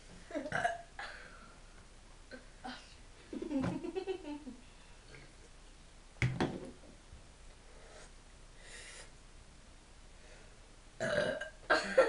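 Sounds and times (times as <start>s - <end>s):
throaty burp: 0.4s - 1.1s, 11.0s - 12.0s
faint breathing: 7.6s - 9.2s, 10.1s - 10.6s.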